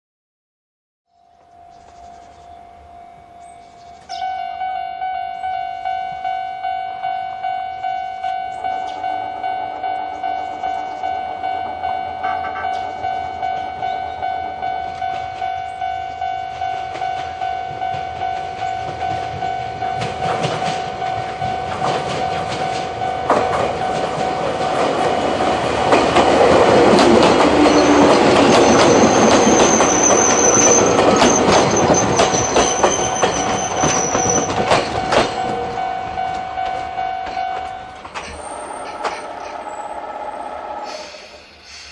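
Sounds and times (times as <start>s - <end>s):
high squeal of train: 1.2s - 41.9s
train passing: 1.3s - 41.9s
level crossing bell ringing: 1.6s - 25.3s, 27.4s - 39.3s
wheels clattering over rail joints: 16.9s - 39.9s.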